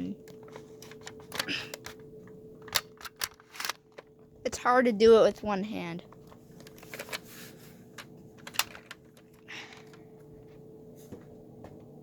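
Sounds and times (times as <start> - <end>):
sharp plastic click: 2.6 - 4.0
plastic toy blaster clicks and rattles: 2.6 - 4.1.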